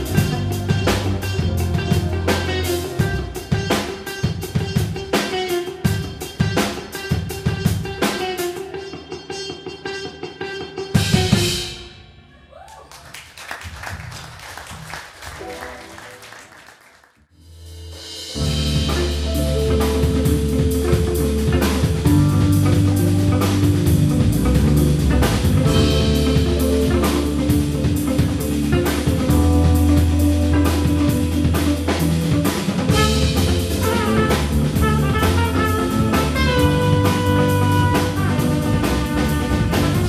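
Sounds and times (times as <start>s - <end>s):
live band playing: 0.0s - 12.3s, 15.3s - 16.5s, 17.5s - 40.0s
drums: 0.0s - 16.8s, 17.4s - 40.0s.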